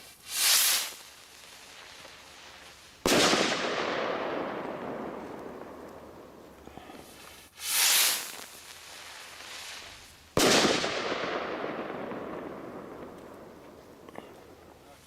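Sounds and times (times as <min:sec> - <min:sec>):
firework rocket whoosh: 0:00.0 - 0:14.5
firework bang with echo: 0:03.1 - 0:07.0, 0:10.4 - 0:14.4.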